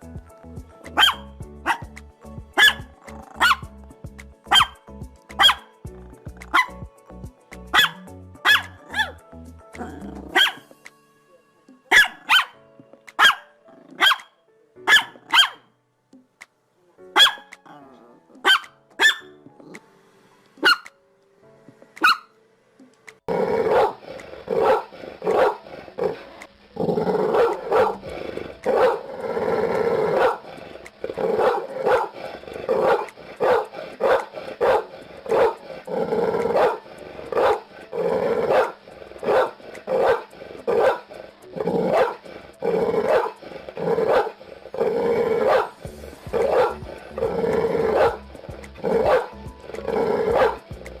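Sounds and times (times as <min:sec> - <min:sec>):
dog barking: 0:00.9 - 0:01.9, 0:02.6 - 0:03.7, 0:04.5 - 0:04.8, 0:05.4 - 0:05.7, 0:06.5 - 0:06.8, 0:07.7 - 0:09.2, 0:10.3 - 0:10.7, 0:11.9 - 0:12.6, 0:13.2 - 0:14.3, 0:14.9 - 0:15.7, 0:17.2 - 0:17.8, 0:18.4 - 0:19.3, 0:20.6 - 0:20.9, 0:22.0 - 0:22.3, 0:23.6 - 0:26.2, 0:27.2 - 0:28.0, 0:28.7 - 0:29.0, 0:29.9 - 0:30.4, 0:31.2 - 0:35.6, 0:36.4 - 0:37.7, 0:38.4 - 0:41.1, 0:41.7 - 0:42.2, 0:43.0 - 0:44.4, 0:45.2 - 0:46.8, 0:47.6 - 0:49.4, 0:50.2 - 0:50.6.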